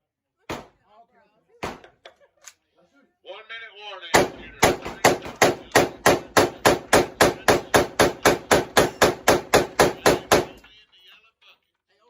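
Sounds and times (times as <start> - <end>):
rapid semi-automatic gunfire: 4.2 - 10.6.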